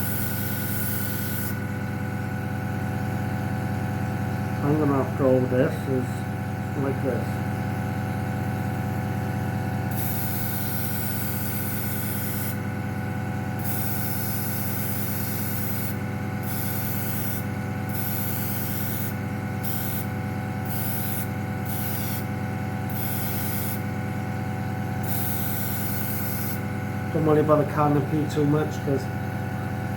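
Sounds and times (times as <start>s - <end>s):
airbrush hissing bursts: 0.0s - 1.6s, 9.9s - 12.7s, 13.6s - 23.9s, 25.0s - 26.7s
steady low hum: 0.0s - 29.9s.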